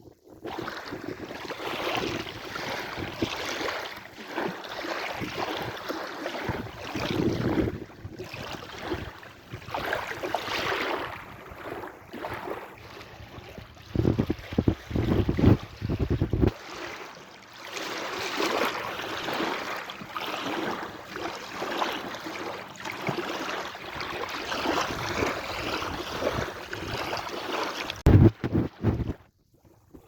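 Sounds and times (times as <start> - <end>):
sea waves washing in: 0.8 - 29.1
wind gusts buffeting microphone: 6.5 - 9.7, 13.3 - 16.6, 28.0 - 29.2.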